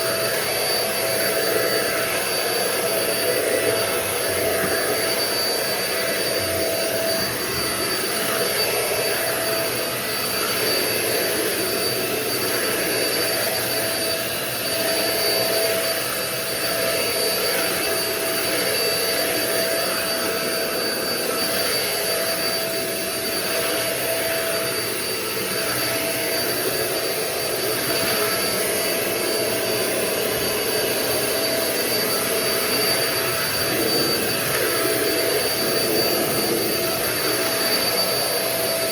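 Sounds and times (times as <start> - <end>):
vacuum motor whine: 0.0 - 38.9.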